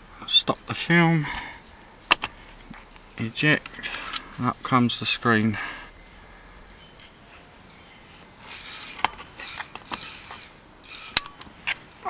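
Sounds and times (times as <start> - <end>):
plastic clicks and rubbing: 2.1 - 4.3, 8.6 - 11.8.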